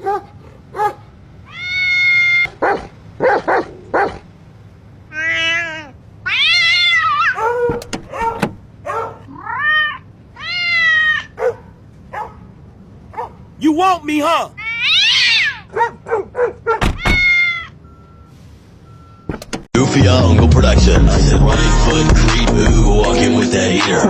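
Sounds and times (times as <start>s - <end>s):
cat meowing: 5.1s - 7.3s, 17.1s - 17.7s.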